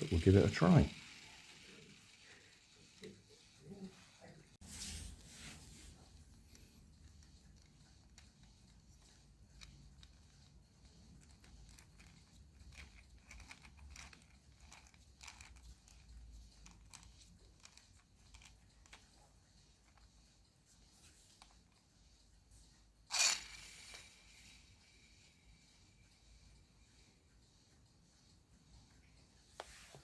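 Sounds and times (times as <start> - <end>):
plastic toy car rustling: 0.0 - 3.3, 11.1 - 19.2, 23.1 - 24.7.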